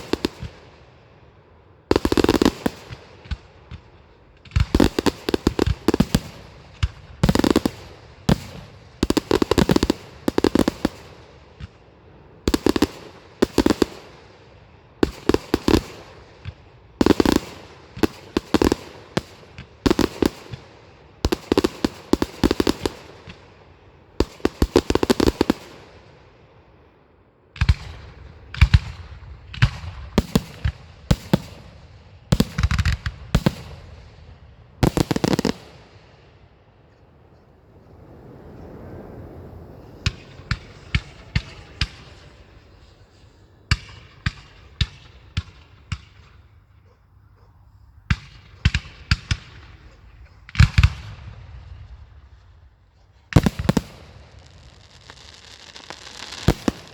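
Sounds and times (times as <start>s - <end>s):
fireworks bangs: 0.0s - 0.9s, 1.9s - 14.3s, 15.0s - 26.2s, 27.6s - 46.9s, 47.9s - 56.9s
fireworks crackling: 0.0s - 1.0s, 1.9s - 26.2s, 27.6s - 46.8s, 48.0s - 56.9s.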